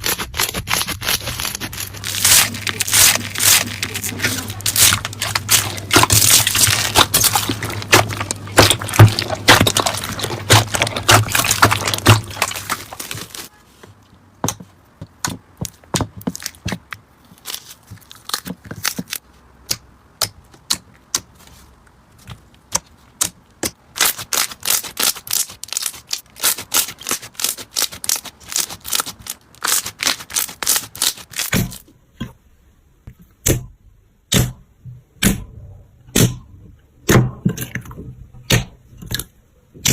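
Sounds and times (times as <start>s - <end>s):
slime crackling and popping: 0.0s - 13.5s, 23.9s - 31.8s.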